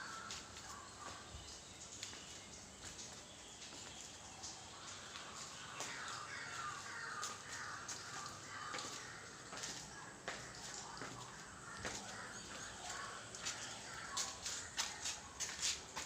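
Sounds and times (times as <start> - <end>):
crow-like caws: 0.0 - 0.5, 5.6 - 9.7, 10.9 - 14.9.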